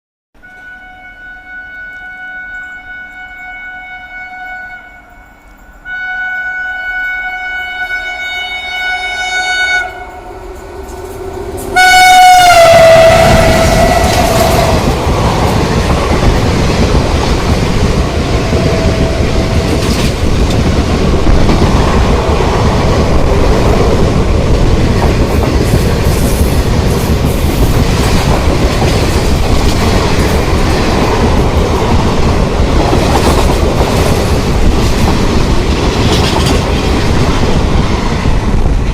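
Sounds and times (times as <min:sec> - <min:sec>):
locomotive horn blasts: 0:00.4 - 0:10.5, 0:11.6 - 0:14.8
train rumble and wheel clatter: 0:00.4 - 0:38.9.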